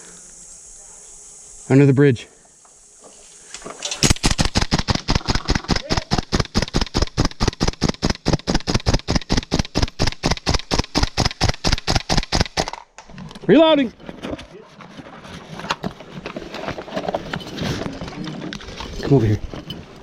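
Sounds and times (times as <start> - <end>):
airsoft rifle rapid shots: 4.0 - 12.8.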